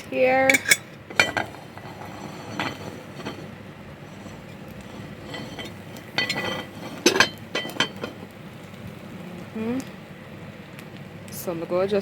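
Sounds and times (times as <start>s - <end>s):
metal cookware clinking on pot: 0.4s - 3.5s, 4.2s - 8.2s.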